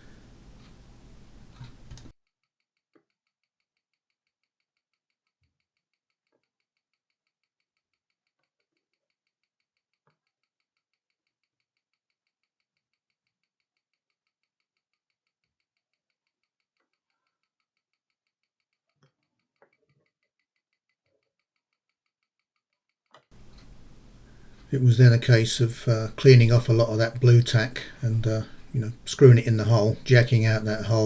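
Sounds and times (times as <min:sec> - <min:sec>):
rapid faint ticking: 0:00.0 - 0:02.1, 0:23.4 - 0:31.0
soft clicks: 0:00.0 - 0:02.1, 0:23.4 - 0:26.4.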